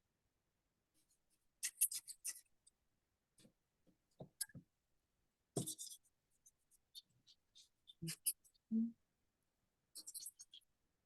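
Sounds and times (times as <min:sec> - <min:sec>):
scratchy strokes on paper: 0:01.0 - 0:02.6, 0:05.6 - 0:08.6, 0:10.0 - 0:10.7.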